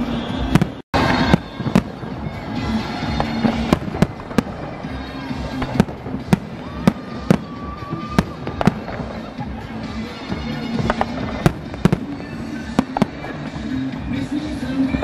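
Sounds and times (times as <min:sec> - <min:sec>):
fireworks bangs: 0:00.0 - 0:15.0.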